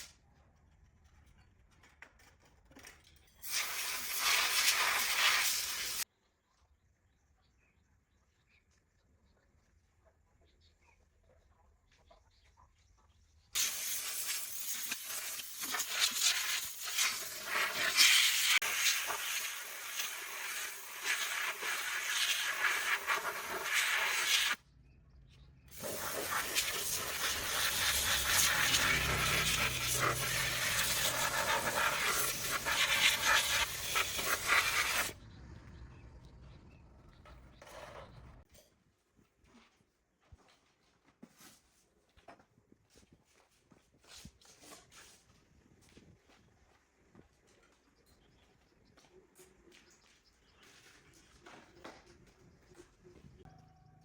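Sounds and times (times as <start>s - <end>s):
pressurised jet hissing: 3.5s - 6.0s, 13.6s - 24.6s, 25.8s - 35.2s.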